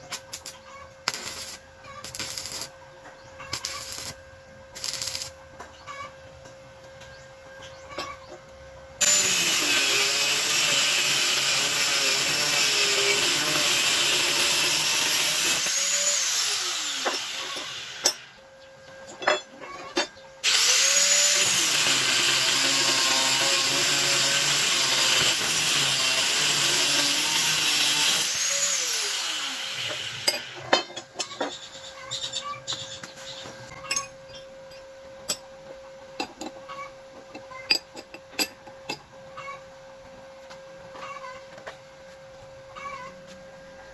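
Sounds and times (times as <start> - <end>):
electric rotary tool running: 9.0 - 18.3, 20.4 - 30.5.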